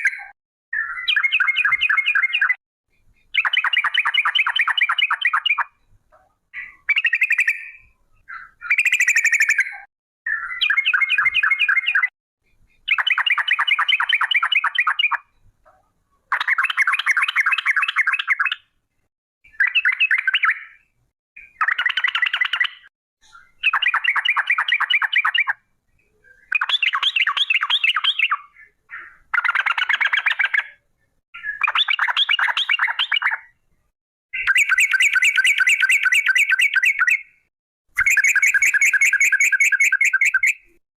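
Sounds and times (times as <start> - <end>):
bird singing rattling song: 0.0 - 40.8.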